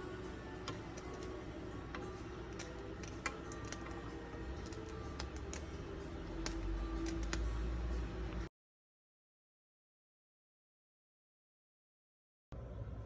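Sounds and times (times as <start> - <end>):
small hard objects clicking: 0.6 - 7.5.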